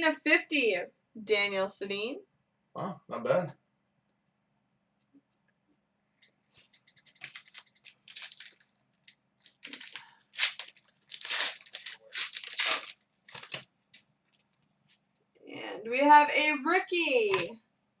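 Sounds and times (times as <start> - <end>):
wrapper tearing and crinkling: 7.2 - 13.7.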